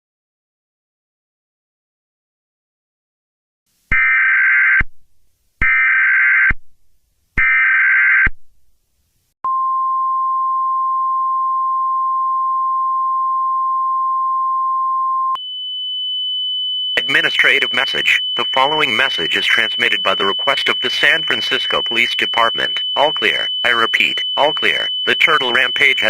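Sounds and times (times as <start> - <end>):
steady single-pitch alert tone: 9.5 - 26.0
screeching digital data bursts: 17.0 - 26.0.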